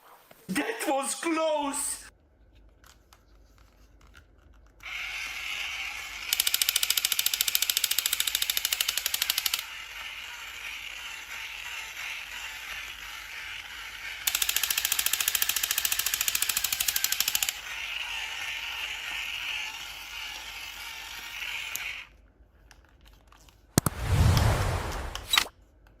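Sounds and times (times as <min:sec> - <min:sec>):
heavy burst: 0:23.8 - 0:25.4.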